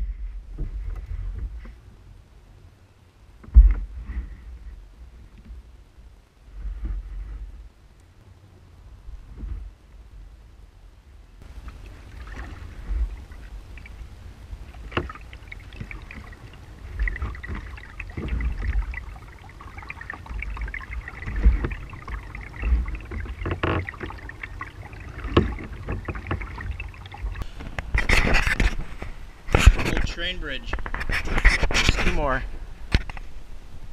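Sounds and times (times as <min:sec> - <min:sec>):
paddle strokes in water: 0:03.4 - 0:10.4, 0:11.4 - 0:32.2
low rumble: 0:08.5 - 0:30.8
water splashes and drips: 0:11.4 - 0:28.8.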